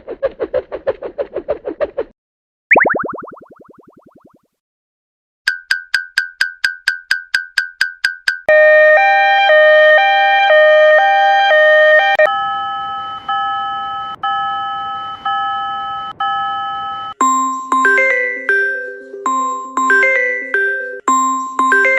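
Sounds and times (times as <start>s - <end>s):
two-tone electronic alarm: 8.5s - 21.9s
railroad crossing ding: 12.3s - 21.9s.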